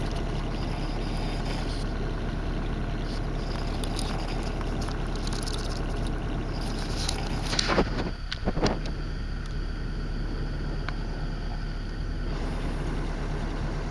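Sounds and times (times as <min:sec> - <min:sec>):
faint ticks and rustles: 0:00.0 - 0:09.6
bus engine drone: 0:00.0 - 0:13.9.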